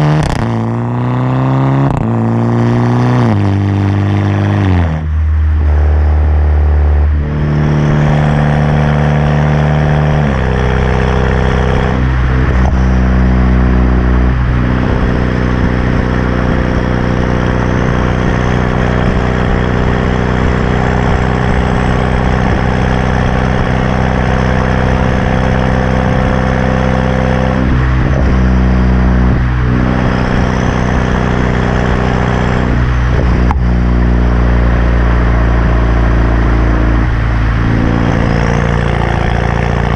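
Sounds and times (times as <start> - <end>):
car engine idling: 4.3 - 39.9.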